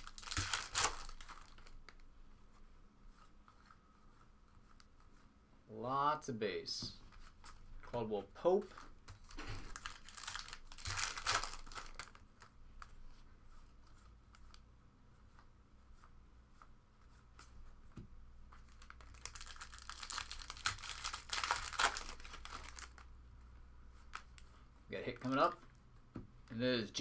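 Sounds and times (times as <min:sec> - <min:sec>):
foil wrappers tearing and crinkling: 0:00.0 - 0:02.0, 0:08.7 - 0:12.3, 0:18.7 - 0:23.1.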